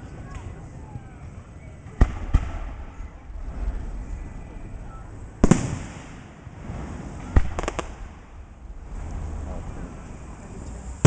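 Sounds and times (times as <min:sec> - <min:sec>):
fireworks bangs: 0:01.8 - 0:09.4
crackling pops: 0:05.4 - 0:06.4, 0:07.2 - 0:08.3.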